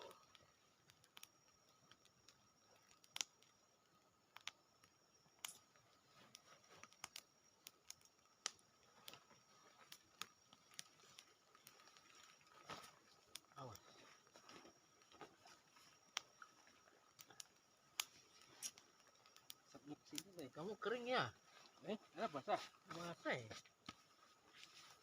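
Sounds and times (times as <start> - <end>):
soft clicks and ticks: 0.0 - 3.6, 4.3 - 12.0, 16.0 - 20.4.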